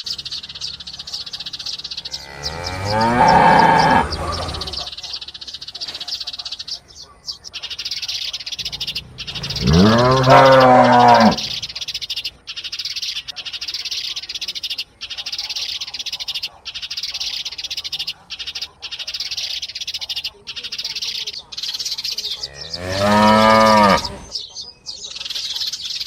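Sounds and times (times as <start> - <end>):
calf mooing: 2.1 - 4.8, 9.6 - 11.6, 22.4 - 24.2.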